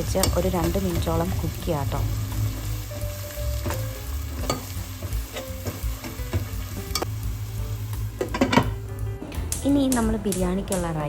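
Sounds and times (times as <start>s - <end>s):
spoon striking pan: 0.0s - 1.2s, 3.5s - 7.1s, 8.2s - 8.8s
onion sizzling in hot oil: 0.0s - 11.0s.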